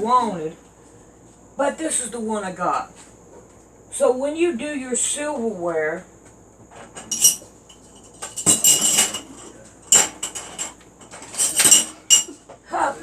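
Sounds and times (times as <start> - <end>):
silverware clinking and rattling: 7.0 - 12.5.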